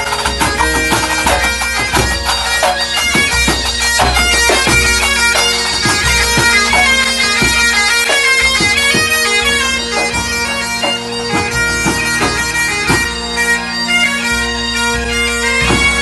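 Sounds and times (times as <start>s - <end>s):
drums beating: 0.0s - 13.4s, 14.5s - 16.0s
bagpipes melody with drones: 0.0s - 16.0s.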